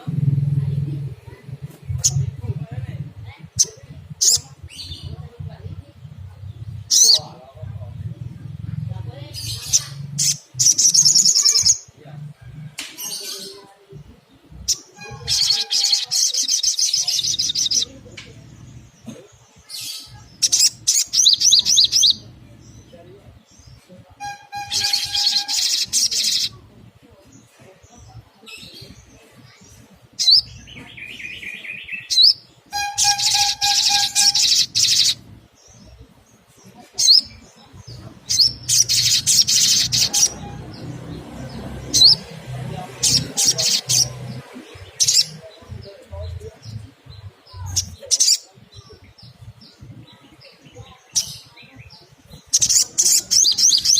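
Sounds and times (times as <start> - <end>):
bird chirping and chattering: 0.0 - 12.4, 13.0 - 53.9
bird trilling and whistling: 24.2 - 26.5, 30.2 - 35.2, 38.3 - 40.5, 52.5 - 53.9.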